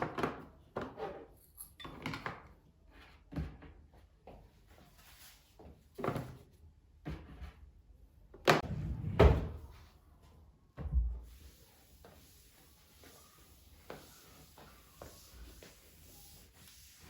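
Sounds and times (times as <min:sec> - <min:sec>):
dull low thud: 0:08.6 - 0:09.7.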